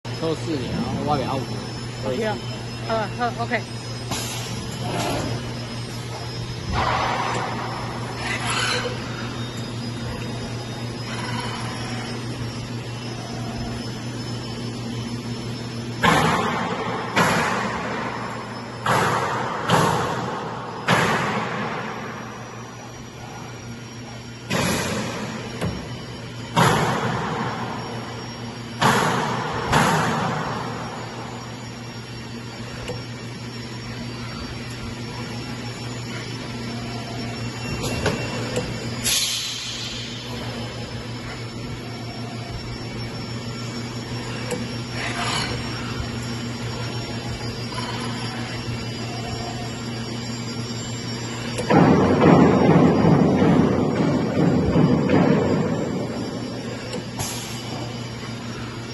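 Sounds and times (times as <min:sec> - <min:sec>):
bending machine humming: 0:00.0 - 0:58.9
sharp bursts of machine noise: 0:00.1 - 0:58.9.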